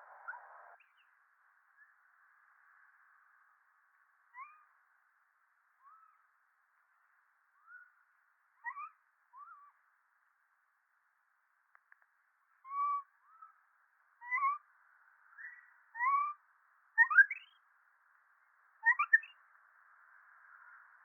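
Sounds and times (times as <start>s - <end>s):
monkey whistle-like calls: 17.0s - 17.5s, 18.9s - 19.3s.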